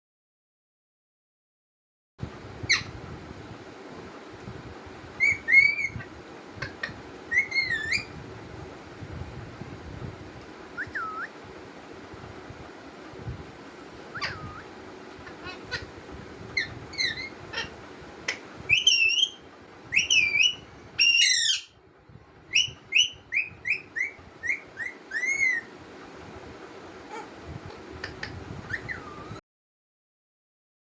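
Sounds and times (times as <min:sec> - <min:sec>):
parrot whistled calls: 0:05.2 - 0:06.1, 0:07.3 - 0:08.2, 0:10.8 - 0:11.4, 0:14.1 - 0:15.9, 0:16.6 - 0:21.8, 0:22.5 - 0:25.7, 0:28.7 - 0:29.4
parrot chirp: 0:05.2 - 0:08.2, 0:14.1 - 0:16.0, 0:16.6 - 0:21.8, 0:22.5 - 0:25.7, 0:28.1 - 0:29.4.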